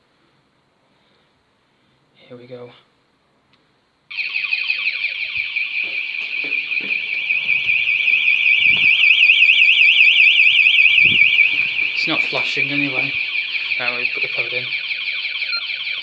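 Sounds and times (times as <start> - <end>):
burglar alarm siren warbling: 4.1 - 16.0.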